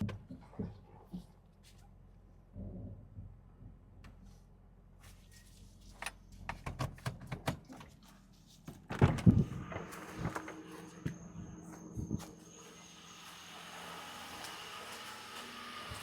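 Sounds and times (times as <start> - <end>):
thin high tone: 9.8 - 14.1.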